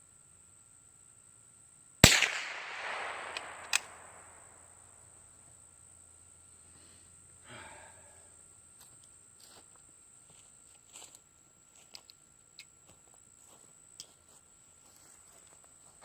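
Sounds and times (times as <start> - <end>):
sharp clicks: 2.0 - 4.6
rifle shot: 2.0 - 4.9.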